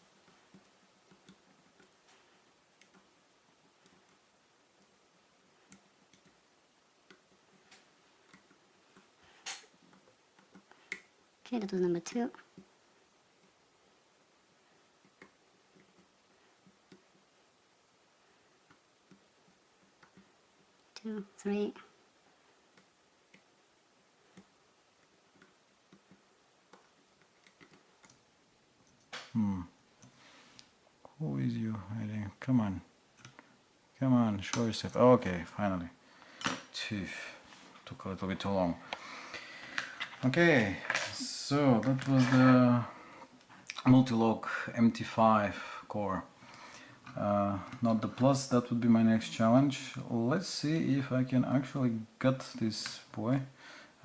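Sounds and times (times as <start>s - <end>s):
person muttering: 29.3s - 29.7s.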